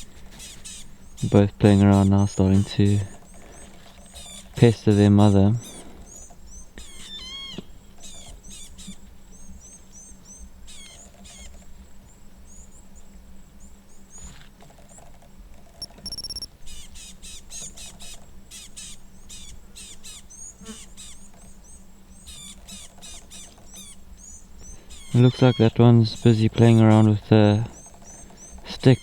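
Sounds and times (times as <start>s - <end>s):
small animals chirping and squeaking: 0.3s - 9.0s, 9.6s - 11.6s, 15.8s - 19.5s, 22.2s - 29.0s
steady low hum: 15.8s - 17.2s.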